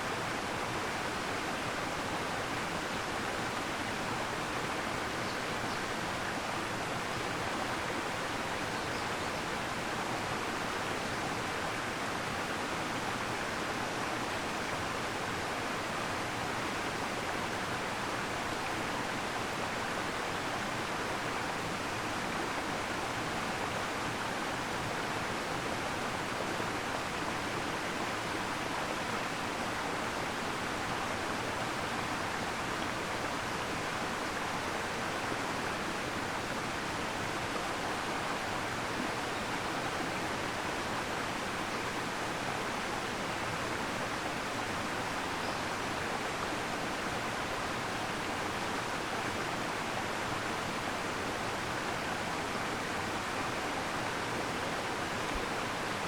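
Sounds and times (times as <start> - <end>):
waterfall rushing: 0.1 - 56.0.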